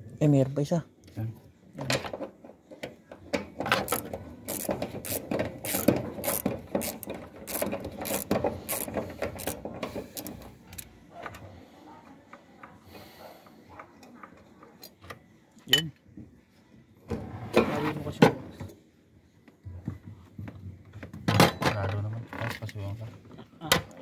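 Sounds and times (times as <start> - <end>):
socket ratchet clicking: 3.8 - 10.9.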